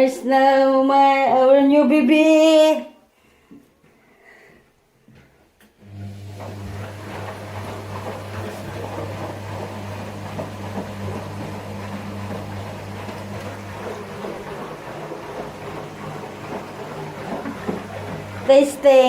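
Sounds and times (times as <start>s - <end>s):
washing machine running: 5.8s - 19.0s.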